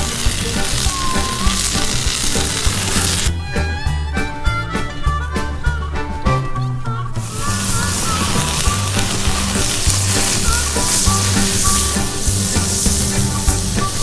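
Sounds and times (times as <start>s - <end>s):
oil sizzling in a skillet: 0.0s - 3.3s, 7.2s - 14.0s
background music: 0.0s - 14.0s.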